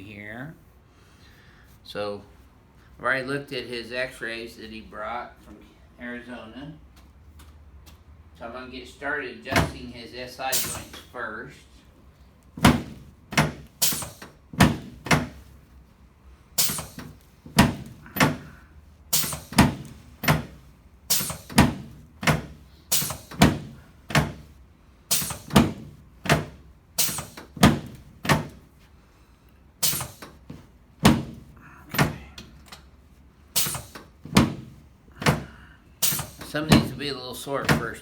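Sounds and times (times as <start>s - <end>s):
sharp thuds on treatment table: 12.6s - 15.5s, 33.6s - 37.0s.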